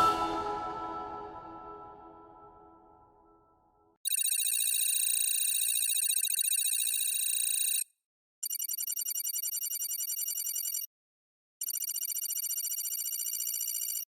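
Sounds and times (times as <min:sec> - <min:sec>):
telephone bell ringing: 0:04.1 - 0:07.8, 0:11.6 - 0:14.0.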